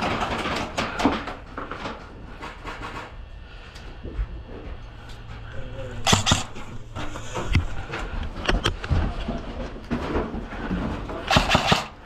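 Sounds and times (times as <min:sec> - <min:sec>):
low steady rumble: 0:03.0 - 0:12.0
sharp clicks and knocks: 0:06.0 - 0:06.7.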